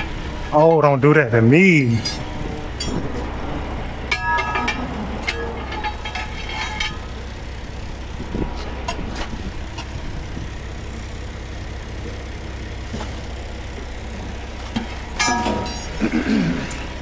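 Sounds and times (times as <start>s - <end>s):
vehicle engine rumbling: 0.0s - 17.0s
metal clinks and knocks: 2.0s - 3.3s, 4.1s - 7.9s, 12.9s - 17.0s.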